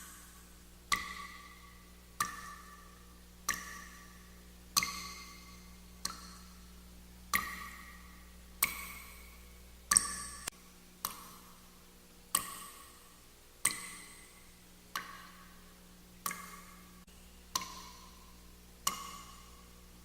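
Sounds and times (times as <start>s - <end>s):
water drops plinking: 7.3s - 8.0s, 9.9s - 11.3s, 17.5s - 18.2s.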